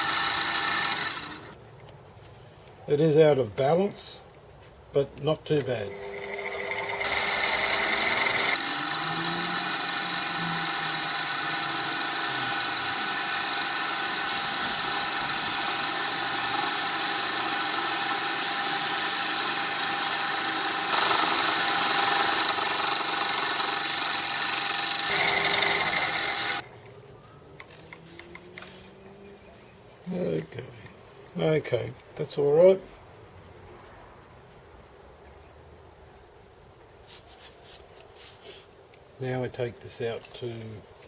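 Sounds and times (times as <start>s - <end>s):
metal lathe cutting whine: 0.0s - 1.5s, 5.9s - 26.6s.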